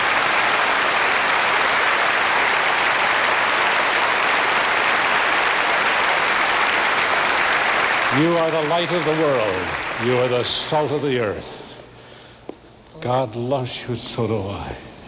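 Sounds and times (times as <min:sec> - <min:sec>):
congregation applauding: 0:00.0 - 0:11.9.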